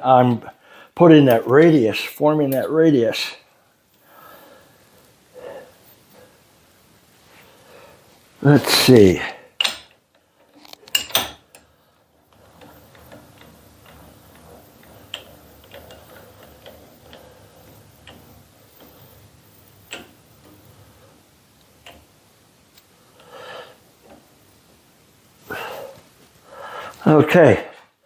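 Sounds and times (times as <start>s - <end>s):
metal tools clicking and tapping: 9.6s - 11.7s, 12.6s - 17.3s, 19.8s - 20.6s.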